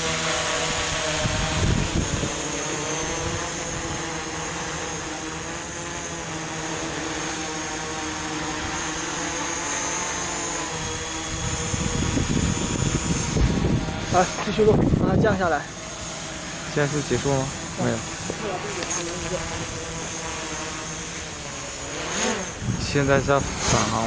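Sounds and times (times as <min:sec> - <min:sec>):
drone motors humming with whine: 0:00.0 - 0:24.0
low buffeting: 0:21.3 - 0:24.0.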